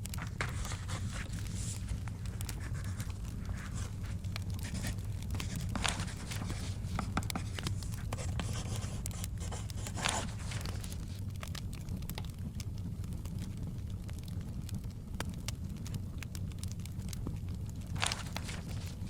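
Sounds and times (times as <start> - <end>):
pages turning: 0.0 - 11.2, 17.9 - 19.0
wood fire crackling: 0.0 - 19.0.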